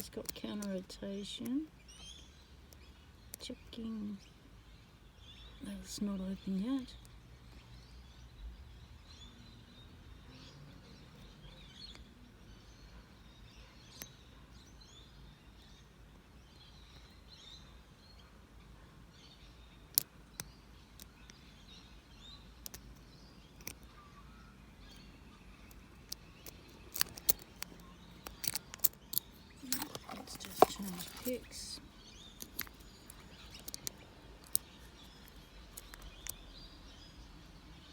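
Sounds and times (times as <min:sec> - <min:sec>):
birds chirping faintly: 0:00.0 - 0:37.9
sharp clicks: 0:32.4 - 0:36.4.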